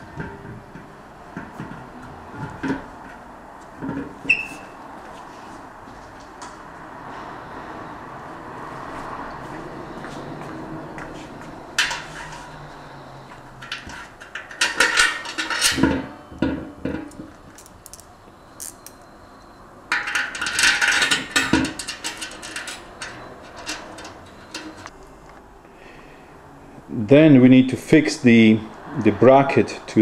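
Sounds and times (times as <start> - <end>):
metal rattling: 11.8 - 19.0, 19.9 - 24.9
metal hardware clinking: 13.5 - 19.1, 19.9 - 24.9.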